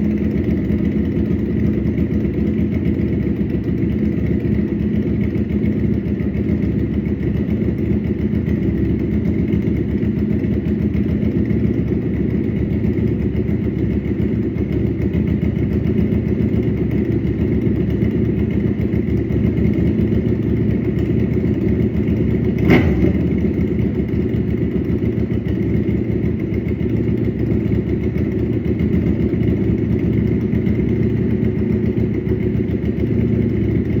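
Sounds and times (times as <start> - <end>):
motorcycle engine idling: 0.0 - 34.0
exhaust crack: 21.8 - 26.0.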